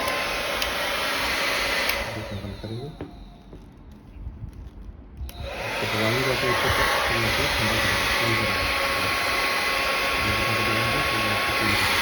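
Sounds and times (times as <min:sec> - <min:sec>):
hair dryer switch click: 0:00.0 - 0:02.2, 0:05.3 - 0:07.1
hair dryer blowing with whine: 0:00.0 - 0:03.6, 0:05.2 - 0:12.0.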